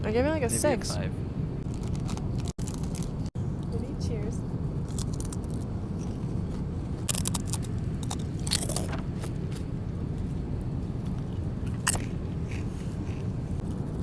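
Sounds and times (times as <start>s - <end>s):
airliner cabin rumble: 0.0s - 14.0s
crunchy snack being chewed: 1.6s - 3.3s, 4.8s - 9.6s, 11.2s - 13.3s.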